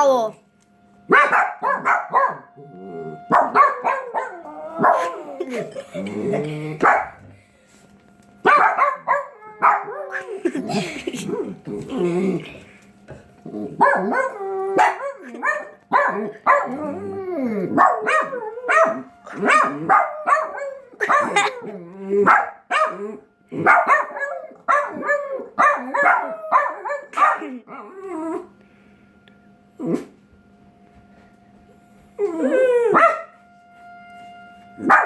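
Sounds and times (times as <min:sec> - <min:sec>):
dog howling and barking: 0:01.1 - 0:07.2, 0:08.4 - 0:12.4, 0:13.6 - 0:28.5, 0:32.2 - 0:33.3.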